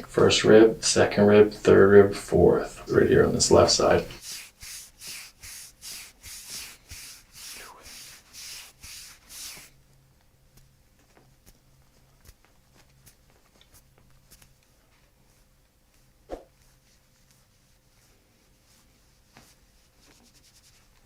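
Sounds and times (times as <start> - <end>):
hands rubbing over back: 0.1 - 9.8, 10.6 - 21.0.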